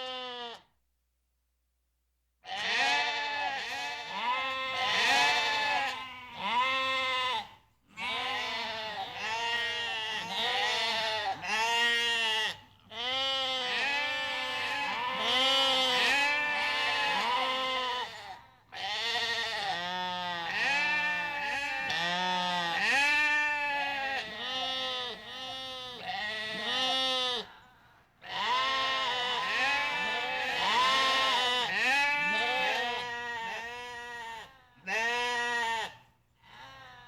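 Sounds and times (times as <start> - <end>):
goats bleating: 0.0 - 0.6, 2.5 - 27.5, 28.2 - 36.0.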